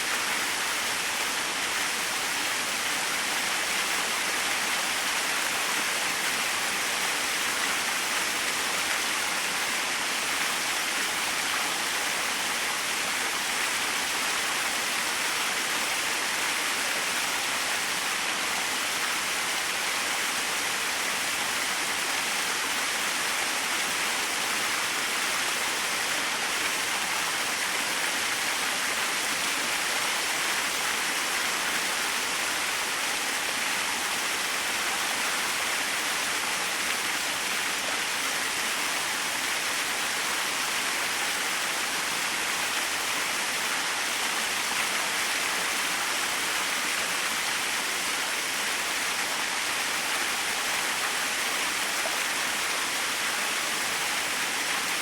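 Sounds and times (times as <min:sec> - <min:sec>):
small waterfall splashing: 0:00.0 - 0:55.0.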